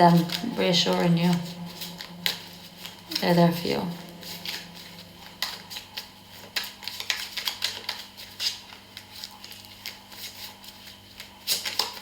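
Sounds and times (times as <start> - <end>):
cards being shuffled: 0.0 - 12.0
low electrical hum: 0.0 - 12.0.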